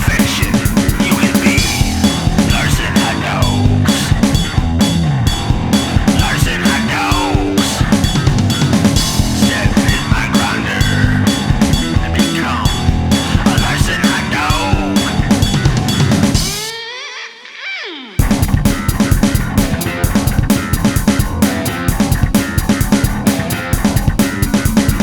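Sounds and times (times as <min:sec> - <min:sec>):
bass guitar: 0:00.0 - 0:16.7, 0:18.2 - 0:25.0
drum kit steady beat: 0:00.0 - 0:16.7, 0:18.2 - 0:25.0
distorted guitar: 0:00.0 - 0:16.8, 0:18.2 - 0:25.0.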